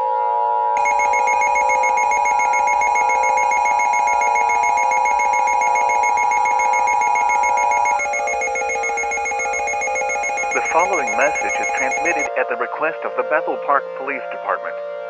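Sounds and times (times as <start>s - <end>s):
two-tone alert signal: 0.8s - 12.3s.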